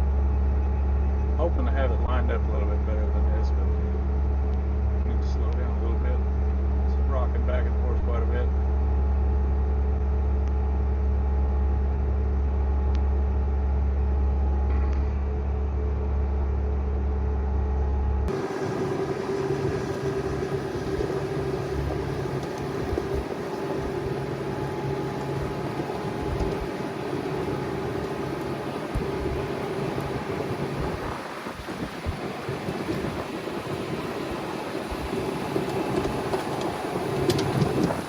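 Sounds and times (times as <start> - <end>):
diesel engine droning under load: 0.0 - 38.0
thinner engine hum: 0.0 - 38.0.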